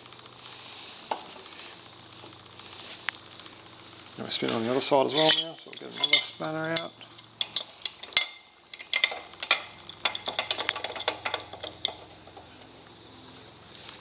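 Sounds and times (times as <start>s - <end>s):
metal spanners clinking: 4.4s - 12.6s.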